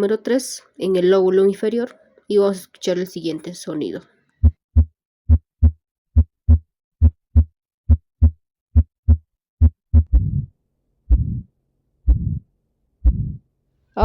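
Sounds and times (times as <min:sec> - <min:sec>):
heartbeat through stethoscope: 0:04.4 - 0:10.5, 0:11.1 - 0:11.5, 0:12.1 - 0:13.4.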